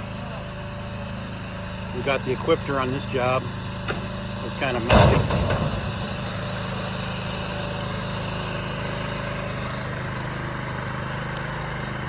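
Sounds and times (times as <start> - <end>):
small gasoline engine idling: 0.0 - 12.0.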